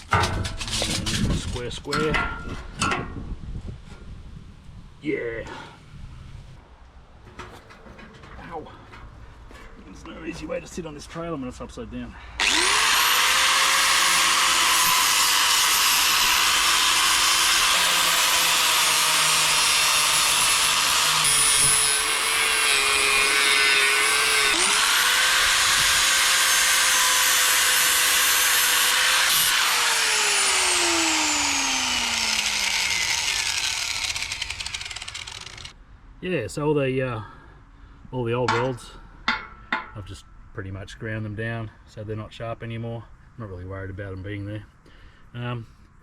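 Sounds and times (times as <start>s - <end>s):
angle grinder grinding metal: 12.4s - 35.7s.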